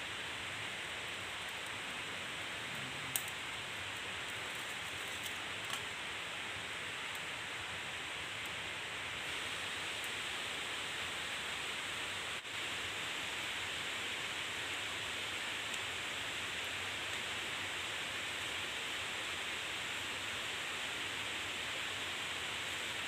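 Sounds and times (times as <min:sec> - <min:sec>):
steady hissing rushing noise: 0:00.0 - 0:23.0.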